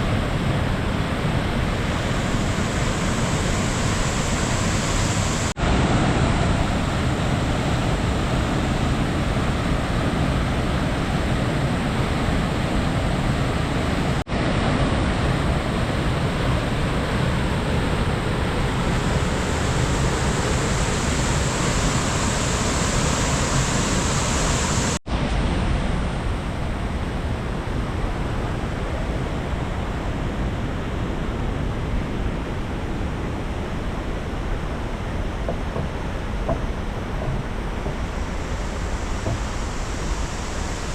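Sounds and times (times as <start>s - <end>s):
waterfall rushing: 0.0s - 25.0s, 36.0s - 40.9s.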